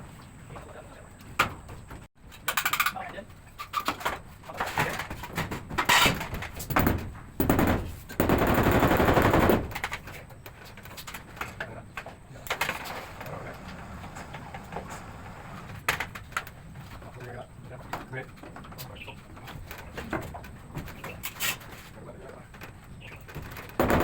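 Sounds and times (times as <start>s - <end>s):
rapid impacts burst: 6.8s - 9.9s, 23.8s - 24.0s.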